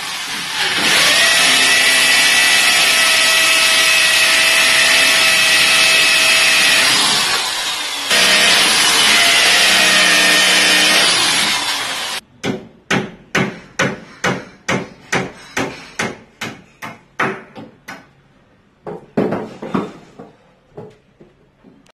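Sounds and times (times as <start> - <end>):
electric power tool running: 0.0 - 12.2
hammer striking wood: 12.4 - 18.1, 18.8 - 20.9.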